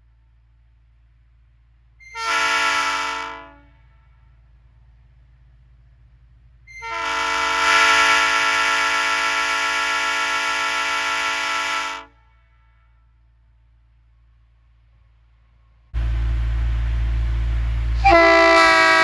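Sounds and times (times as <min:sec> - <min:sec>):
train air horn blast: 0:02.1 - 0:04.3, 0:06.8 - 0:13.2, 0:17.9 - 0:19.0.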